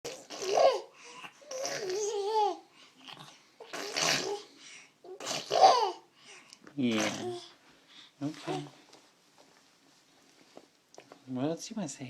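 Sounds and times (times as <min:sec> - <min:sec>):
child making mouth farting noises: 0:00.0 - 0:00.8, 0:01.4 - 0:02.4, 0:03.0 - 0:04.5, 0:05.1 - 0:06.0, 0:06.8 - 0:07.5
child babbling: 0:00.3 - 0:02.6.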